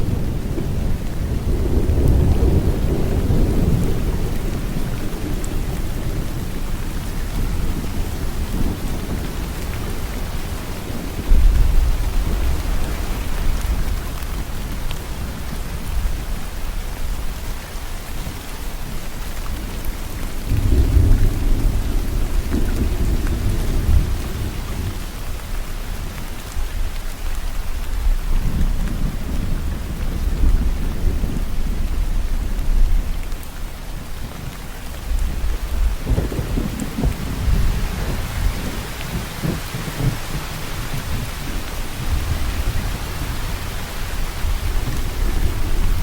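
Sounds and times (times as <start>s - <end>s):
rolling thunder: 0.0s - 14.5s, 20.4s - 25.7s, 35.0s - 46.0s
steady rain: 0.0s - 46.0s.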